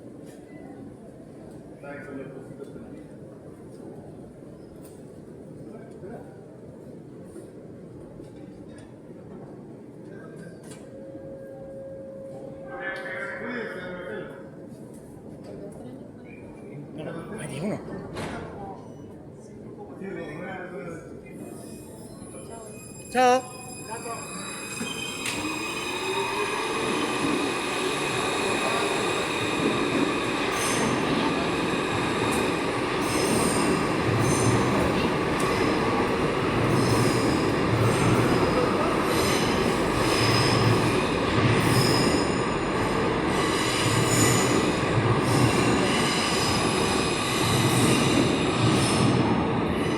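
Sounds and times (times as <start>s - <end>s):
train rumble: 24.2s - 49.9s.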